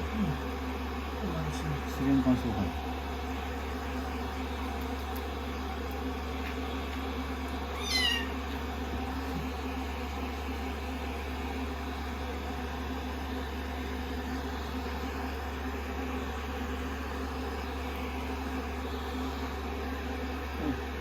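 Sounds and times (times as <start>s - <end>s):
mechanical hum: 0.0s - 21.0s
kitten meowing: 7.7s - 8.4s.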